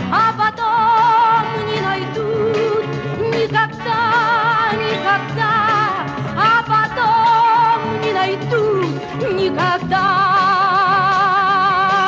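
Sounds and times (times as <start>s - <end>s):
instrumental accompaniment: 0.0s - 12.0s
woman singing with vibrato: 0.0s - 12.0s.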